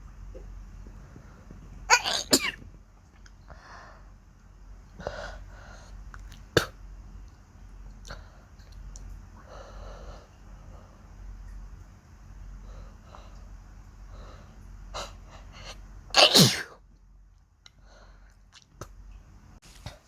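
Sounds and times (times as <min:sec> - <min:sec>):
person sneezing: 0:16.2 - 0:16.8.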